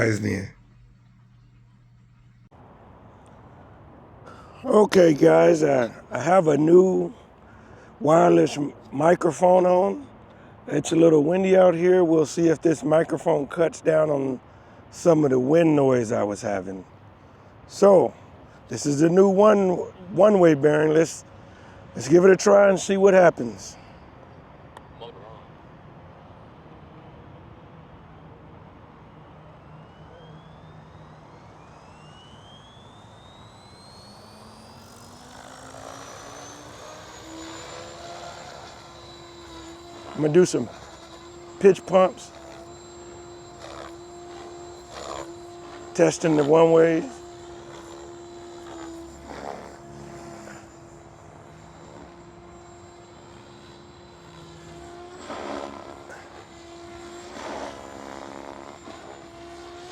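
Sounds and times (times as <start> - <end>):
electric helicopter whine: 0.0 - 59.9
whooshing rotor blades: 29.3 - 59.9.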